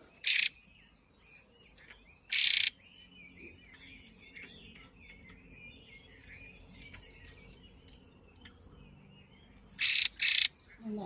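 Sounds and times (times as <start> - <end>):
bird twittering chirps: 0.0 - 11.0.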